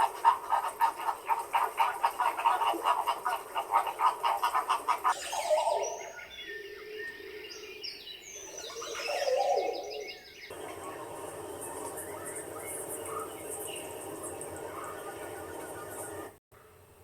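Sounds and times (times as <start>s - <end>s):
birds singing: 0.0s - 16.4s.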